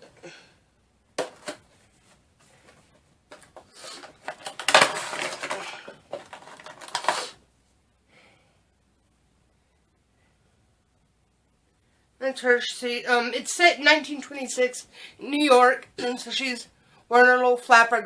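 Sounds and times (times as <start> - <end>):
cardboard and plastic crinkling: 2.6 - 7.4.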